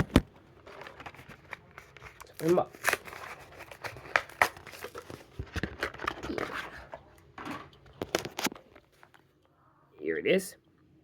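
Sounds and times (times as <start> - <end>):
cardboard tearing: 0.0 - 6.9
plastic blister crinkling: 0.0 - 9.2.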